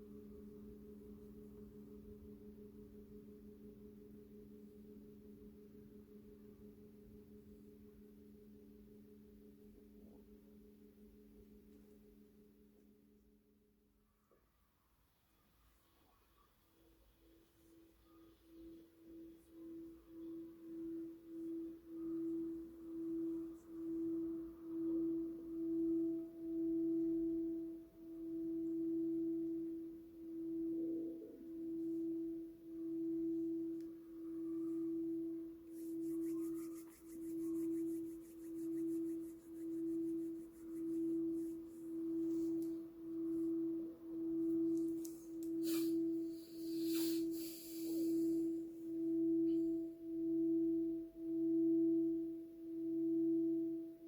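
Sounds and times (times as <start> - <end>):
faint higher tone: 17.7 - 46.6, 47.8 - 54.0
singing bowl ringing: 19.0 - 46.6, 48.1 - 54.0.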